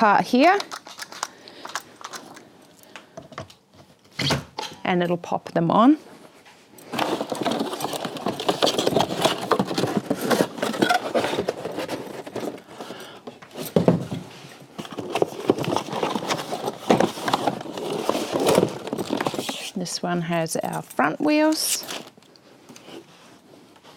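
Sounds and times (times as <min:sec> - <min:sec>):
plastic packaging rustling: 0:00.3 - 0:02.5, 0:06.8 - 0:19.8.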